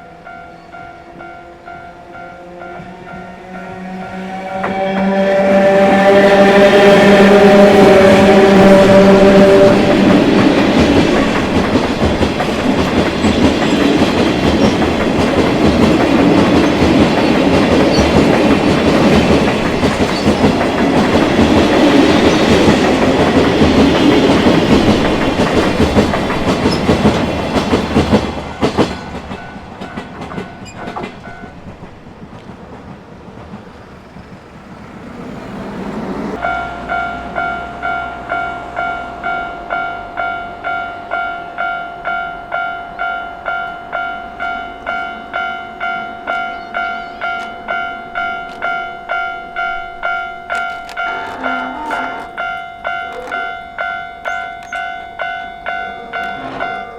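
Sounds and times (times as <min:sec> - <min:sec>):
train horn: 0:00.9 - 0:11.6, 0:50.9 - 0:53.8
train wheels clattering over rail joints: 0:04.5 - 0:36.4.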